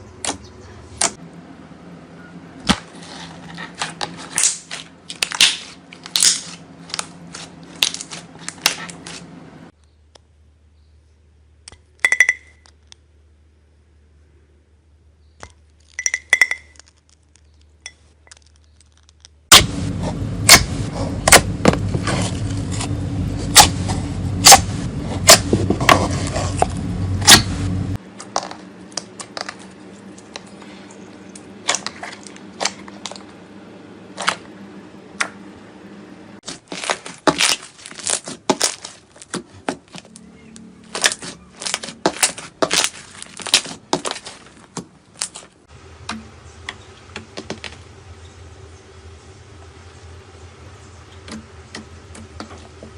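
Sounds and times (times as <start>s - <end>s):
steady low hum: 0.0s - 15.4s, 19.3s - 52.9s
slime popping and crackling: 36.5s - 39.4s, 40.9s - 44.4s.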